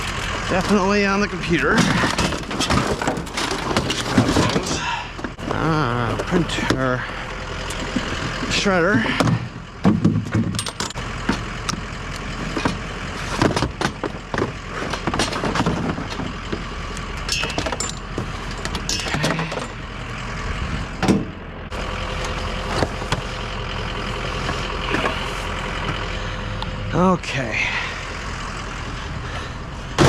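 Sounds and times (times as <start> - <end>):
vehicle engine idling: 0.0 - 30.0
scrap items clattering: 1.6 - 6.8, 12.4 - 16.6, 17.3 - 19.8, 24.4 - 25.9.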